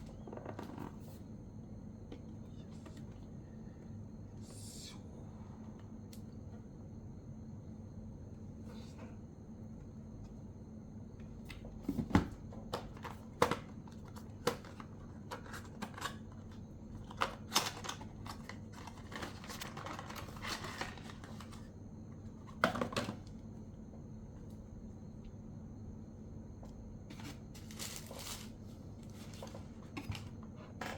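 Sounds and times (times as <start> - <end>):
steady low hum: 0.0 - 17.5, 18.1 - 30.9
packaging rustling: 27.6 - 28.6.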